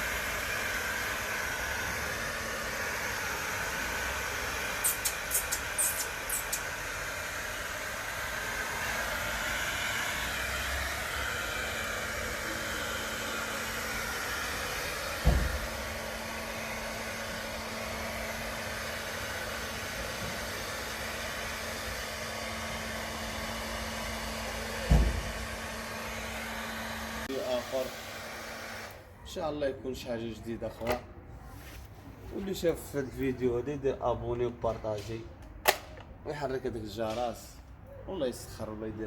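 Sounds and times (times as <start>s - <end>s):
motor-driven blower blowing: 0.0s - 29.0s.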